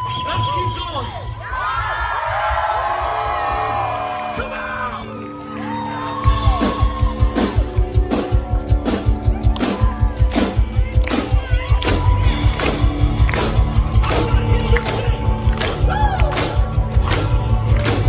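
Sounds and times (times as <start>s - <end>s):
live rock band playing: 5.0s - 18.0s
fast driving drums: 6.2s - 18.0s.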